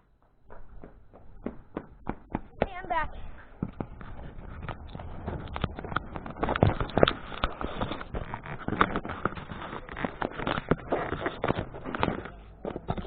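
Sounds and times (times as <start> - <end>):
toy car rattling over rough ground: 3.7 - 13.0.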